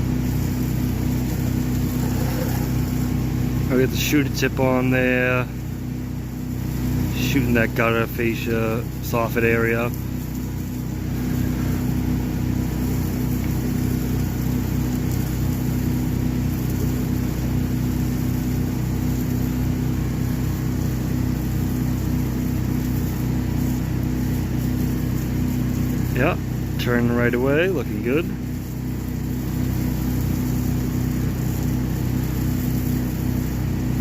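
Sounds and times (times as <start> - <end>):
water spray hissing: 0.0 - 4.3, 6.4 - 26.8
pressure washer engine running: 0.0 - 34.0.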